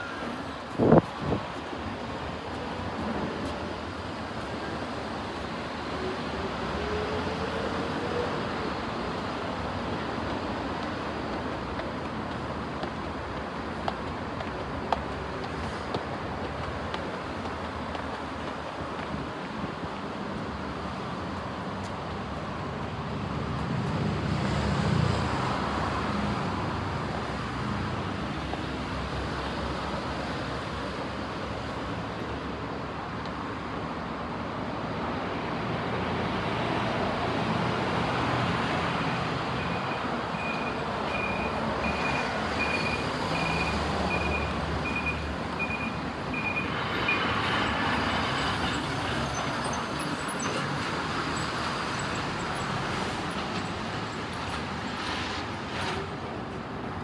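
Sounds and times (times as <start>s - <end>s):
road traffic passing: 0.0s - 57.0s
high-pitched beeps: 39.6s - 47.2s.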